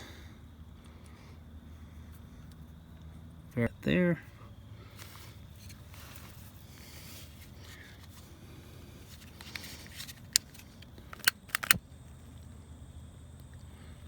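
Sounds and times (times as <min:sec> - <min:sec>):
low background hum: 0:00.0 - 0:14.0
sharp metallic clicks: 0:09.3 - 0:11.8.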